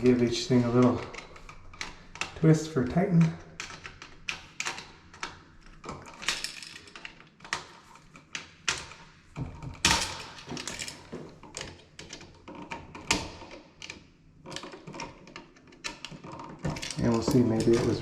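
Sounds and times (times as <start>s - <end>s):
metal and wires being handled: 14.4s - 18.0s.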